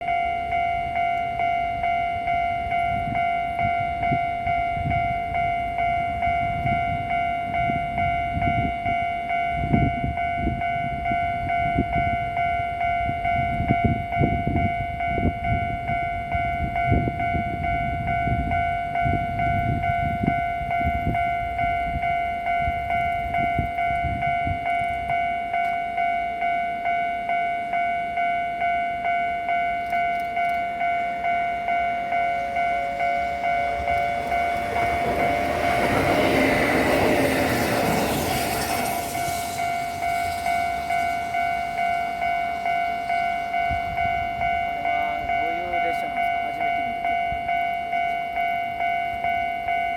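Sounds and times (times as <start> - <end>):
level crossing bell ringing: 0.0 - 49.9
train rumbling past: 0.0 - 49.9.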